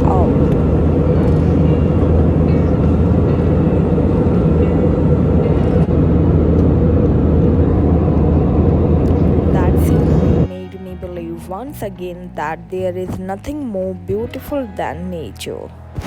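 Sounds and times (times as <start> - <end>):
jet airliner cabin drone: 0.0 - 10.7.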